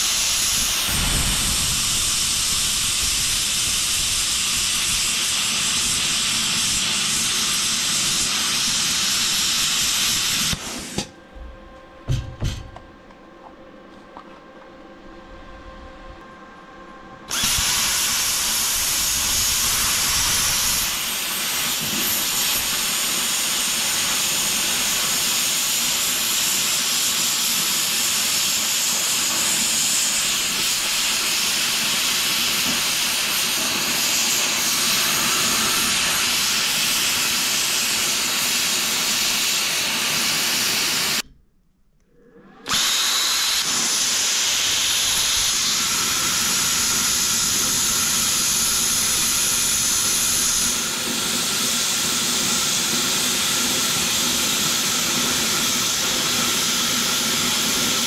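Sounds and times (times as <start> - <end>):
plasma cutter hissing: 0.0 - 11.1, 17.3 - 41.2, 42.7 - 58.0.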